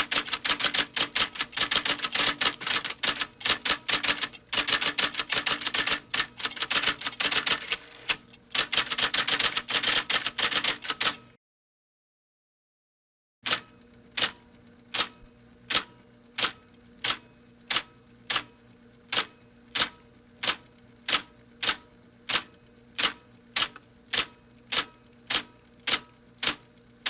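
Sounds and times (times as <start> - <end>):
typewriter keys clacking: 0.0 - 11.2
typewriter motor hum: 0.0 - 11.3, 19.1 - 26.8.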